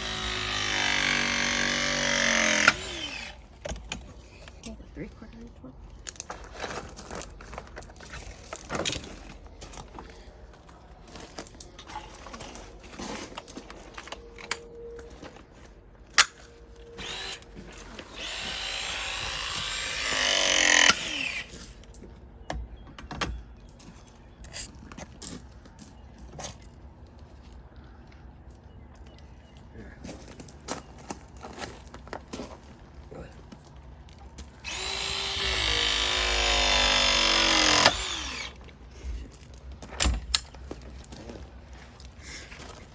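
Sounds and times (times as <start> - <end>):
power drill running: 0.0 - 3.4, 17.0 - 21.6, 34.6 - 38.6.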